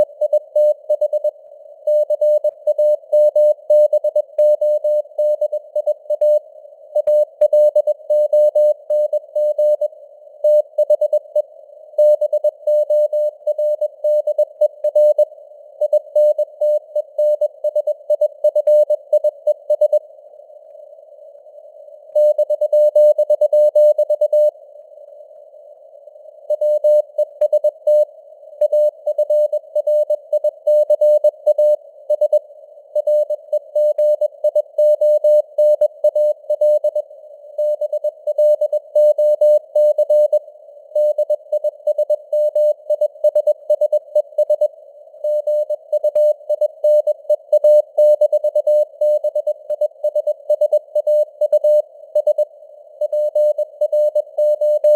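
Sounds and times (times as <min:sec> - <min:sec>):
morse code beeps: 0:07.0 - 0:09.9, 0:53.0 - 0:54.9.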